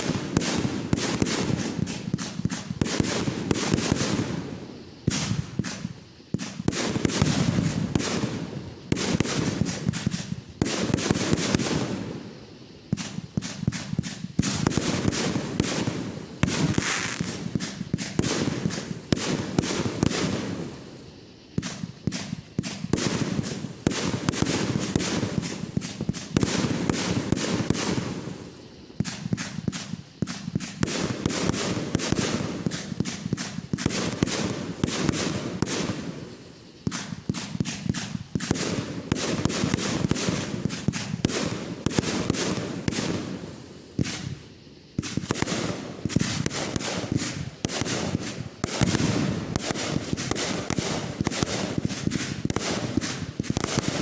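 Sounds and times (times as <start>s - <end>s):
fireworks bangs: 0.0s - 21.0s, 21.6s - 54.0s
fireworks crackling pops: 0.0s - 54.0s.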